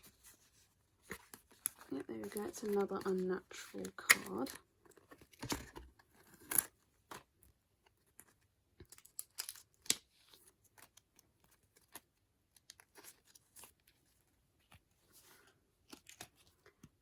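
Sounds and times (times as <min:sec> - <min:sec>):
packaging rustling and crinkling: 0:00.0 - 0:06.8.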